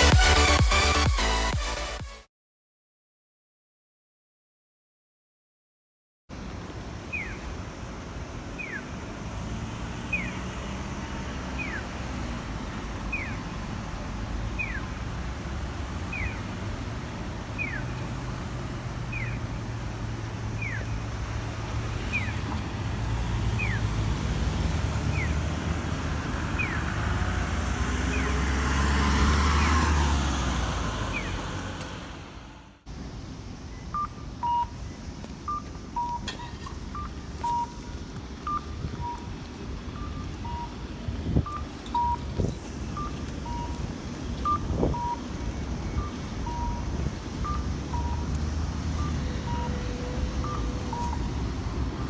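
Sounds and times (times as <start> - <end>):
vehicle passing: 7.6 - 32.8, 41.3 - 52.0
crossing signal electronic chirp: 14.6 - 15.0, 16.1 - 16.5, 20.5 - 21.0, 33.8 - 52.0.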